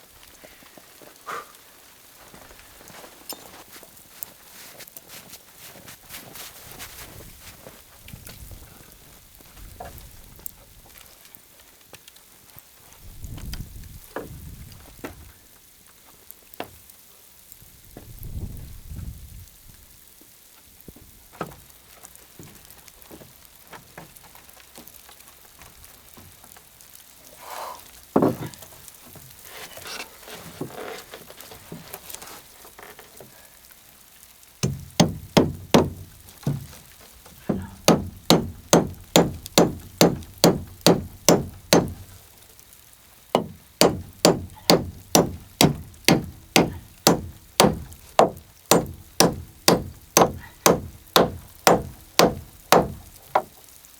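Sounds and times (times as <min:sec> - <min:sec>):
light crackle: 0:00.0 - 0:53.9
rapid knocking blows: 0:34.6 - 0:36.8, 0:37.4 - 0:42.2, 0:43.4 - 0:53.5.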